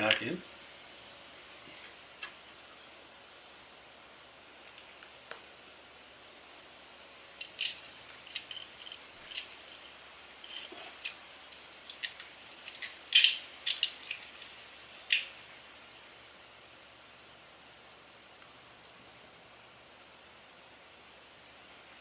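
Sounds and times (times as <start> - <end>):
metal parts clicking and scraping: 7.4 - 15.3.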